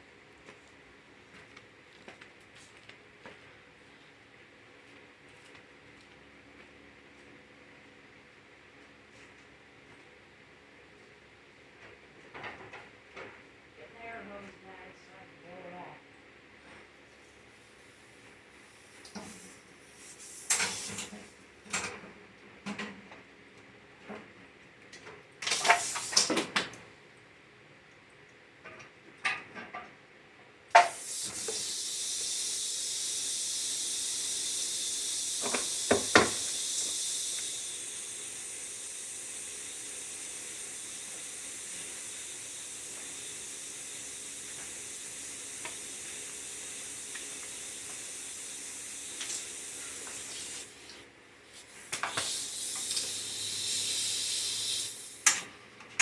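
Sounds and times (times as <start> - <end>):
compressed air hissing from blow gun: 17.5 - 21.5, 25.4 - 26.4, 30.7 - 55.4.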